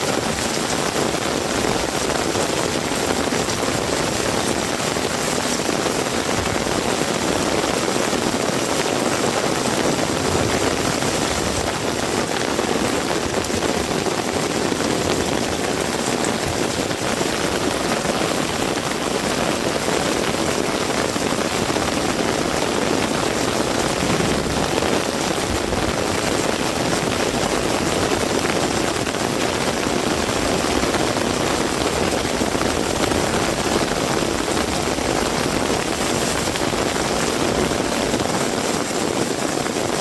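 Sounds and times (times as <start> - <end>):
heavy rain falling: 0.0 - 40.0.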